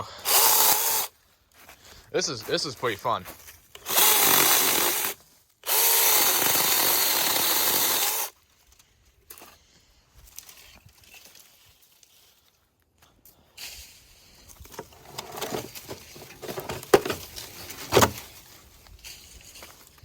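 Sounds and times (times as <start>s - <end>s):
branches and leaves rustling: 10.2s - 12.7s, 13.6s - 20.0s.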